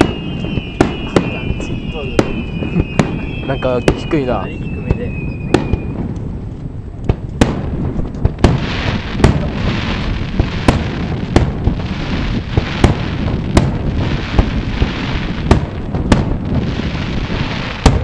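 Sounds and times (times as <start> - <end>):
crackling hiss of fireworks: 0.0 - 18.0
fireworks bangs: 0.0 - 18.0.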